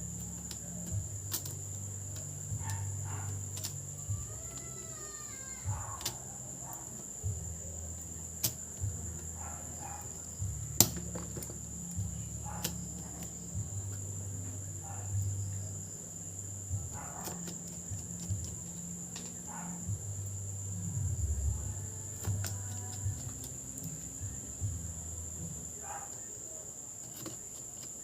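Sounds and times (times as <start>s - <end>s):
low hum: 5.6s - 25.8s.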